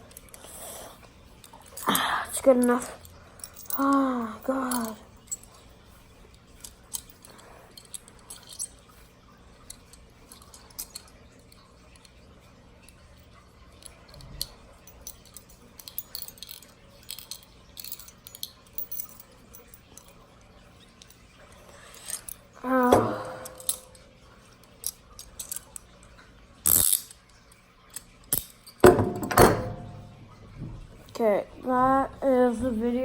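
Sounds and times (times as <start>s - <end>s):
handcuffs clicking: 2.6s - 5.5s, 6.6s - 8.7s, 9.7s - 11.1s, 13.8s - 20.2s, 22.0s - 24.0s, 24.8s - 25.8s, 26.7s - 27.2s, 27.9s - 30.1s.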